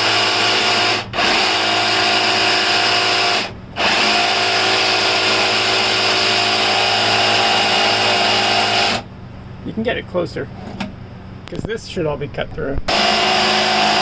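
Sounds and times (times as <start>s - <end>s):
power tool cutting wood: 0.0s - 9.1s, 12.9s - 14.0s.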